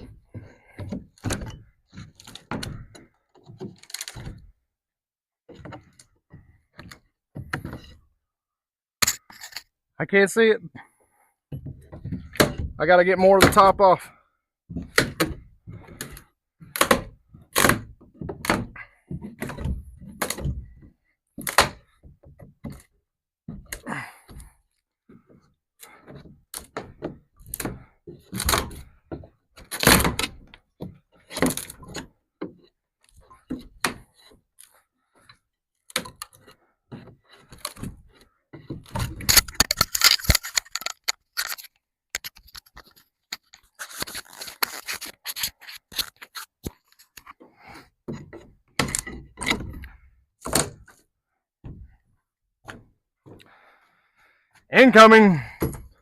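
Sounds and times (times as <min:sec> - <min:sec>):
crate being pried apart: 0:38.8 - 0:41.7.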